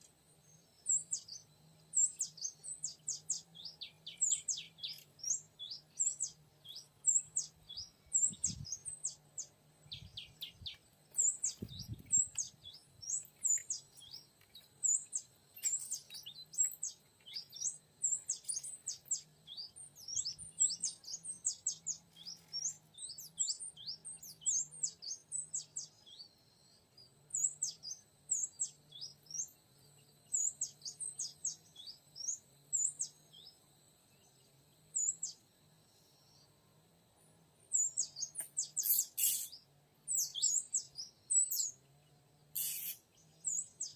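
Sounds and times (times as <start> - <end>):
bird chirping and whistling: 38.8 - 39.5, 42.6 - 43.0.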